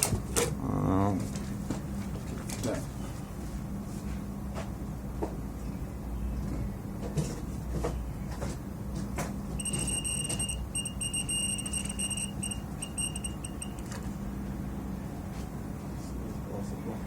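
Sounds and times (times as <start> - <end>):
low electrical hum: 0.0 - 17.0
high electronic beeping: 9.6 - 13.9.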